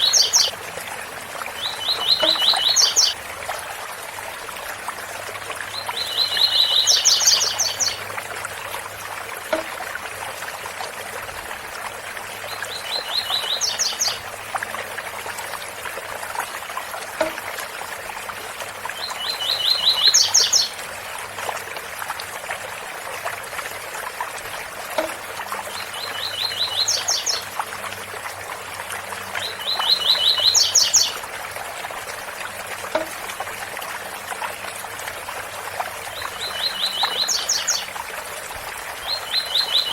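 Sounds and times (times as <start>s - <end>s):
bird singing: 0.0s - 0.5s, 1.6s - 3.2s, 5.8s - 8.0s, 25.8s - 27.4s, 36.2s - 37.9s, 39.1s - 39.9s.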